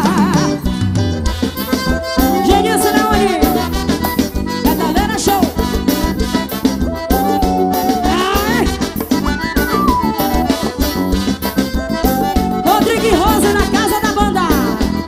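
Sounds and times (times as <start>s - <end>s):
accordion melody: 0.0s - 15.0s
band music: 0.0s - 15.0s.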